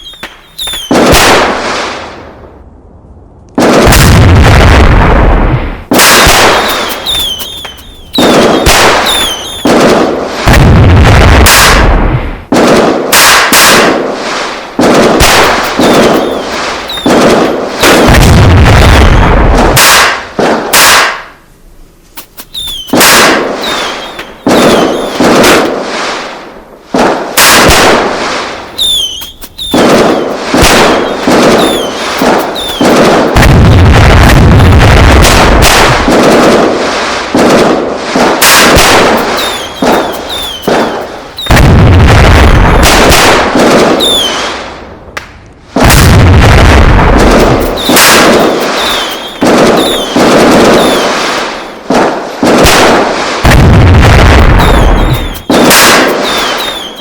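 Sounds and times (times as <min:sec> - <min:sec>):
whistling glides: 0:00.0 - 0:00.9, 0:06.6 - 0:09.7, 0:15.7 - 0:17.2, 0:22.4 - 0:25.3, 0:28.8 - 0:33.0, 0:39.3 - 0:41.6, 0:44.0 - 0:44.4, 0:47.7 - 0:51.3, 0:54.6 - 0:57.0
loud bangs and pops: 0:00.0 - 0:02.2, 0:03.5 - 0:21.4, 0:22.2 - 0:57.0
deep rumbling boom: 0:03.8 - 0:06.5, 0:10.5 - 0:12.5, 0:15.8 - 0:19.8, 0:29.8 - 0:36.2, 0:40.7 - 0:43.3, 0:45.8 - 0:48.3, 0:53.5 - 0:55.8.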